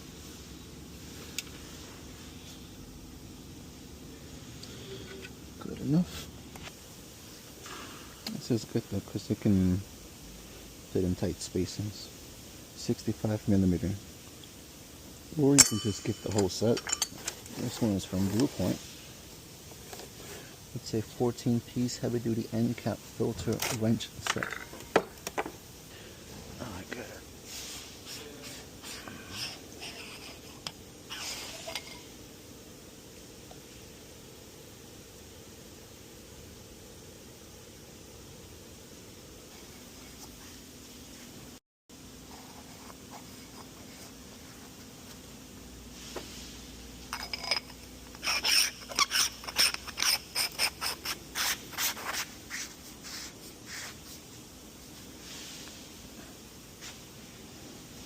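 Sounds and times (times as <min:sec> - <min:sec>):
metal hand tools clinking: 0:15.5 - 0:17.6
rubbing or scraping strokes: 0:47.3 - 0:54.4.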